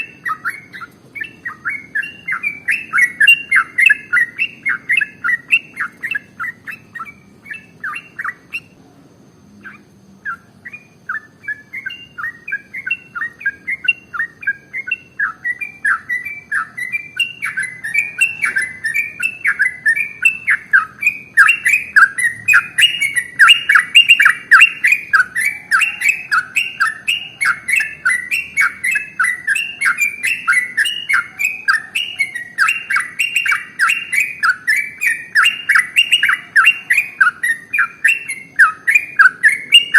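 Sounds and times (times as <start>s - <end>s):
bulbul chirping song: 0.0s - 39.9s.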